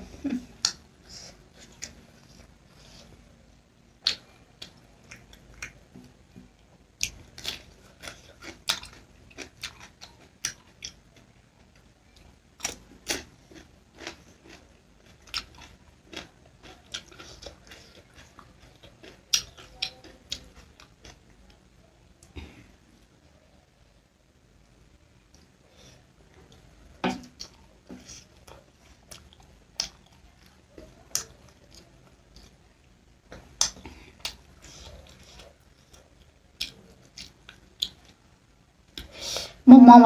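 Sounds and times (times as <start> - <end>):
wet chewing clicks and smacks: 4.0 - 6.2, 7.0 - 11.8, 12.6 - 21.2, 28.3 - 32.6, 33.3 - 38.2.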